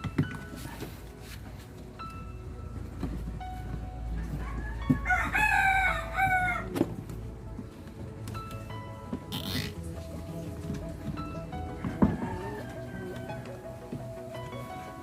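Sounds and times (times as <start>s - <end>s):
rooster crowing: 4.2s - 6.8s, 11.8s - 13.5s.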